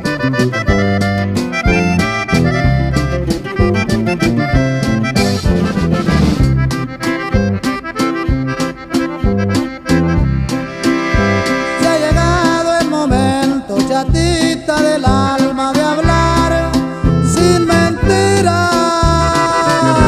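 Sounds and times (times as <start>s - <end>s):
accordion music: 0.0s - 20.0s
bass notes: 0.0s - 20.0s
percussive beat: 0.0s - 20.0s.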